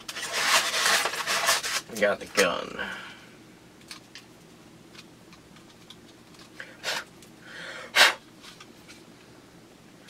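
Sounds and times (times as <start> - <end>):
loud scraping rustles: 0.0 - 1.9.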